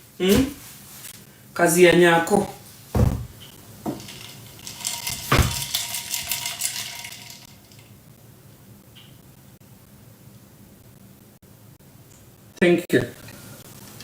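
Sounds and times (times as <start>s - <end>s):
knock: 3.0s - 4.0s
kitchenware clattering and clinking: 3.0s - 7.8s.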